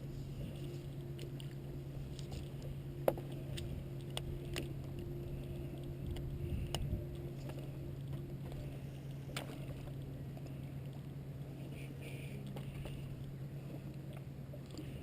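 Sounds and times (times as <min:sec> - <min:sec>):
boat motor humming: 0:00.0 - 0:15.0
fishing gear clicks and taps: 0:00.6 - 0:11.0.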